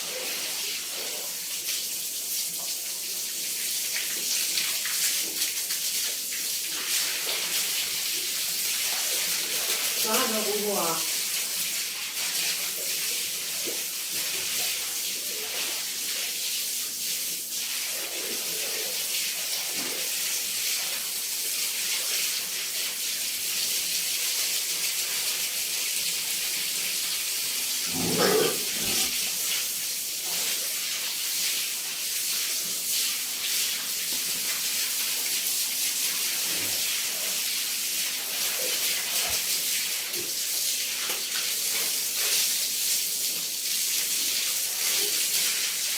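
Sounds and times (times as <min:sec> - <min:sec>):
water hissing: 0:27.7 - 0:29.3.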